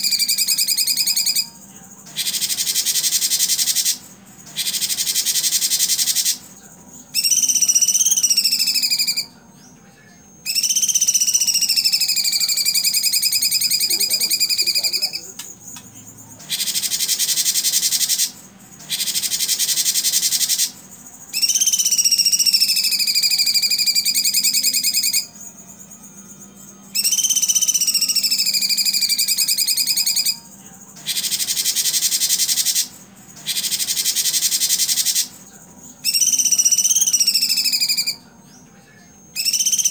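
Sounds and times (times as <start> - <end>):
songbird singing loud phrases: 7.1 - 15.6, 16.4 - 25.5, 26.9 - 35.4, 36.0 - 39.9.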